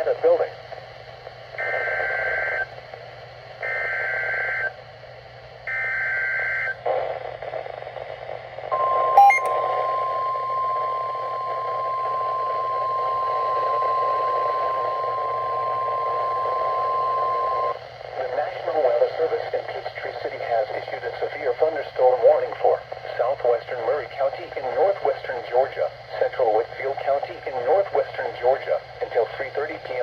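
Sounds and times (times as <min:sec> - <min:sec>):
radio static: 0:00.0 - 0:00.6, 0:09.2 - 0:30.0
steady warning alarm tone: 0:08.8 - 0:17.8.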